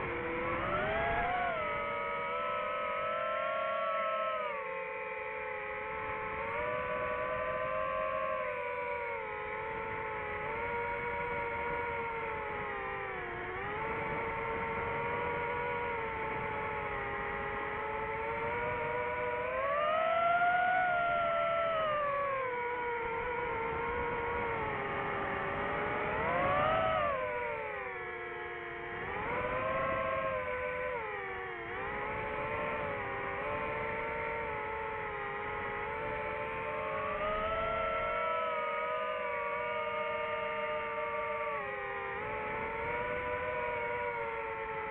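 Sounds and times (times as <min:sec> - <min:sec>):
drone propellers whining: 0:28.7 - 0:44.9.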